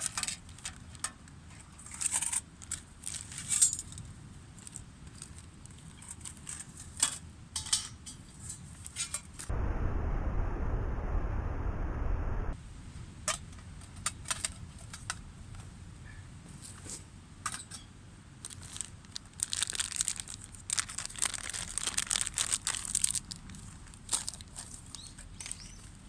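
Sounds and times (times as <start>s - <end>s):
packaging crinkling and tearing: 18.5s - 23.4s.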